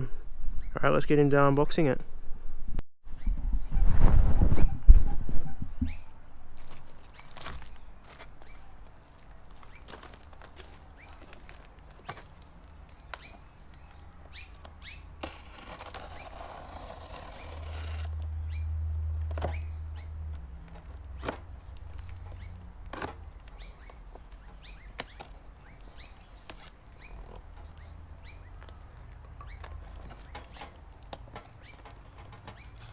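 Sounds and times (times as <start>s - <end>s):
birds chirping: 7.0s - 32.9s.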